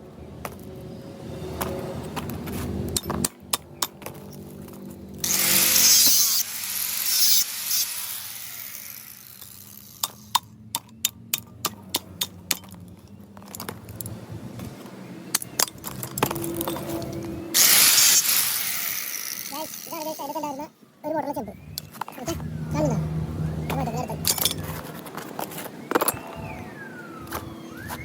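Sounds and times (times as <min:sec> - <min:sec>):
loud noisy burst: 0:05.2 - 0:09.4.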